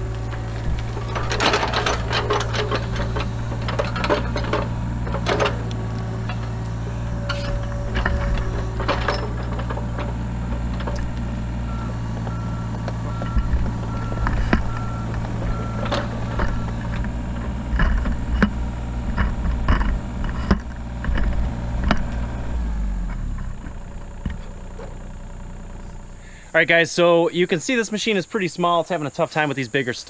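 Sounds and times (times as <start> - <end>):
excavator engine running: 0.0 - 27.6
evenly spaced beeps: 11.7 - 15.9.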